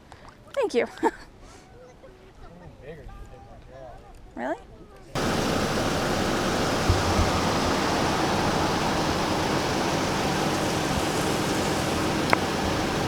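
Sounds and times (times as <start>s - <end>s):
low thuds: 5.2s - 13.0s
rain falling: 5.2s - 13.0s.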